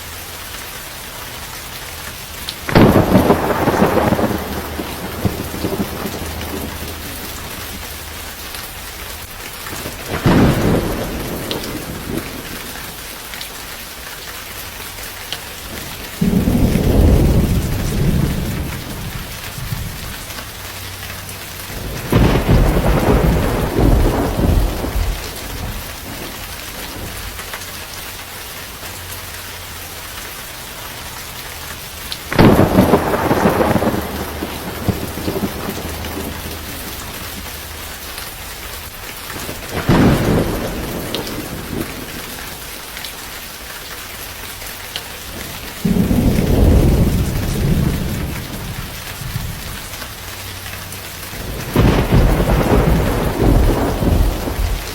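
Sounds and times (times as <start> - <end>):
heavy rain: 0.0 - 54.9
thunder peals: 2.6 - 8.2, 9.7 - 12.7, 16.2 - 20.2, 21.8 - 27.4, 32.3 - 37.5, 39.4 - 42.3, 45.8 - 49.8, 51.4 - 54.9.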